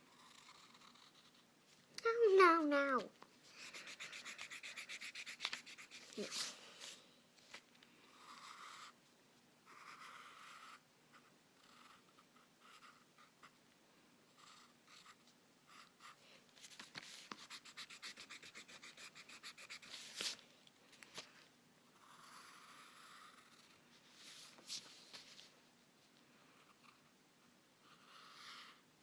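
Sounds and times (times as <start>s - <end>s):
pencil scratching on paper: 0.1s - 1.4s, 3.5s - 6.5s, 8.1s - 9.0s, 9.7s - 13.6s, 14.3s - 16.2s, 17.0s - 20.4s, 22.0s - 24.6s, 27.8s - 28.8s
fast scribbling on paper: 3.6s - 6.4s, 17.3s - 20.0s.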